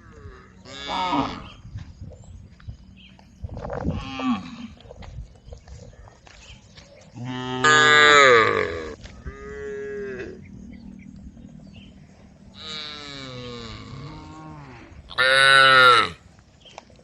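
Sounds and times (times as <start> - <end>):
cows mooing: 0.0 - 1.6, 7.2 - 10.5, 12.5 - 16.2.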